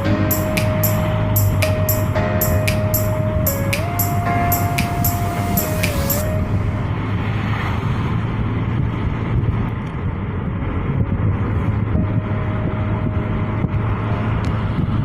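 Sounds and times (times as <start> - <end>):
vehicle engine humming: 0.0 - 15.0
wind on microphone: 3.1 - 15.0.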